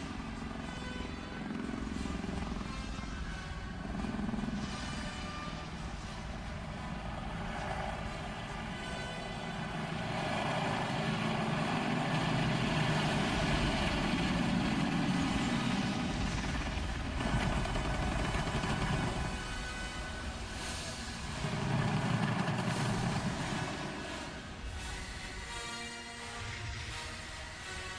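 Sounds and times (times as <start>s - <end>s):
heavy engine running: 0.0s - 26.0s.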